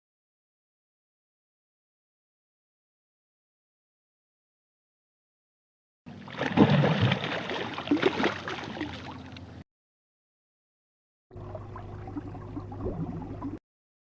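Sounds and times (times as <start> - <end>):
water splashing and gurgling: 6.1 - 9.6, 11.3 - 13.6
bubbling water: 6.2 - 9.4, 11.3 - 13.6
low steady hum: 11.3 - 13.6.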